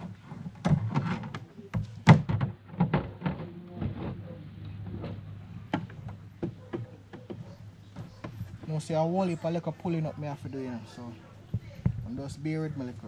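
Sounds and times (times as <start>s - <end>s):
hard objects knocking and clicking: 0.0s - 8.9s, 11.4s - 13.0s.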